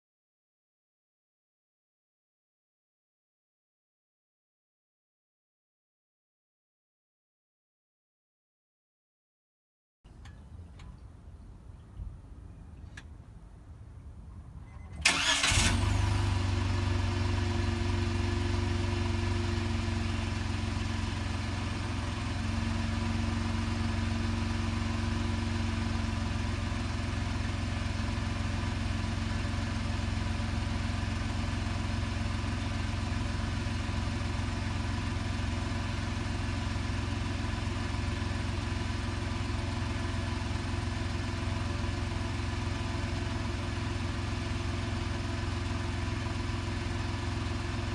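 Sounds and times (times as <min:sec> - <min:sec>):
car engine cranking: 0:15.0 - 0:16.3
car engine idling: 0:15.0 - 0:47.9.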